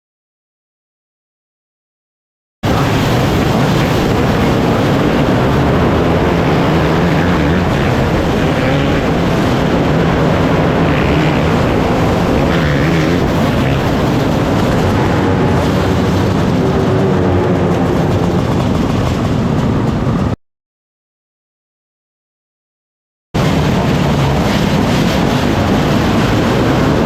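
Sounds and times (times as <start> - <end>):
racing engines droning: 2.6 - 20.3, 23.4 - 27.0.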